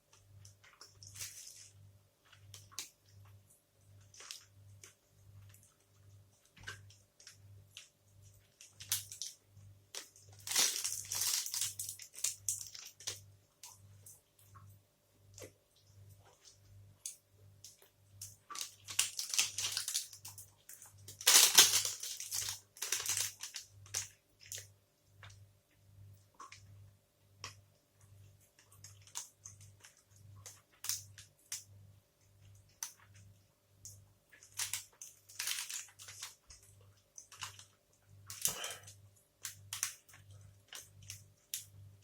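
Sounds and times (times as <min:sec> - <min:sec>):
wrapper crackling: 0:08.6 - 0:13.2, 0:18.5 - 0:24.6, 0:34.4 - 0:36.4.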